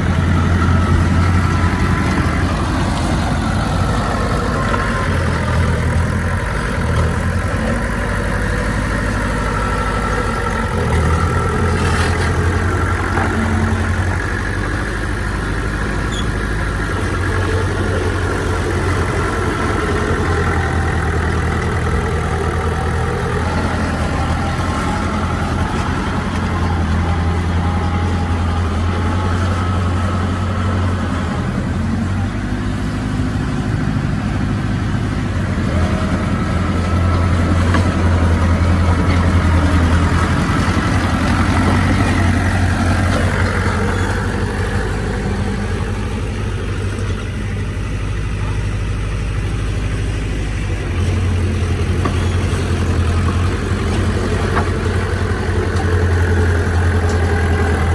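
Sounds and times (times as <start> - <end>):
heavy machinery diesel engine: 0.0 - 57.9.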